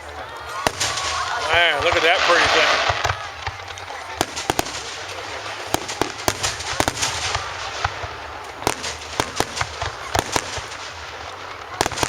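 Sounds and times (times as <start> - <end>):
fireworks popping and banging: 0.0 - 12.0
hissing: 0.0 - 12.0.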